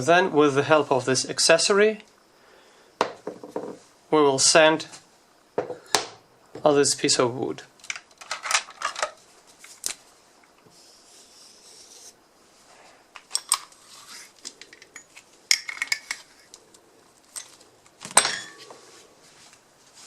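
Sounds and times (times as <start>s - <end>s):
metal parts clinking and clattering: 7.9s - 9.2s, 13.2s - 13.8s, 14.6s - 16.6s, 17.2s - 18.6s.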